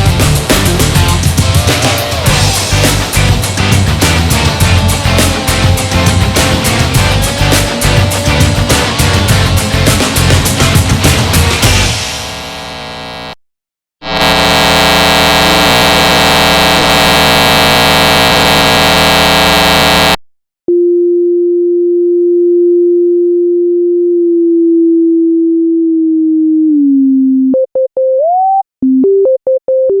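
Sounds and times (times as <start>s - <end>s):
harsh electronic blare: 0.0s - 13.4s, 14.0s - 20.2s
pure electronic tone: 0.0s - 13.4s, 14.0s - 30.0s.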